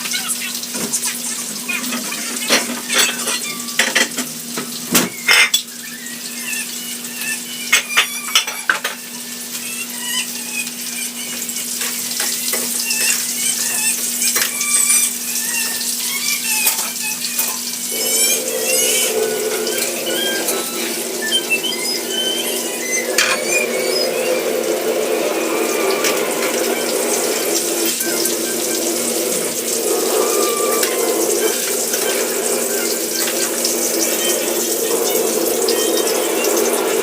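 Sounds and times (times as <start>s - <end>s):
tap water running: 0.0s - 37.0s
dishes and cutlery clinking: 2.0s - 5.7s.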